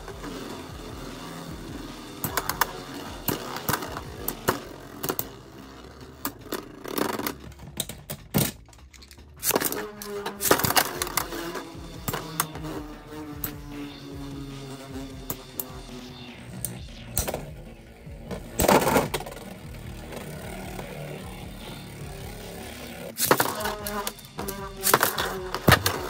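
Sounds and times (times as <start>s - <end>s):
spinning tops clacking together: 0.0s - 16.0s, 23.1s - 26.0s
background music: 0.0s - 26.0s
buzzing whir of spinning tops: 0.0s - 26.0s.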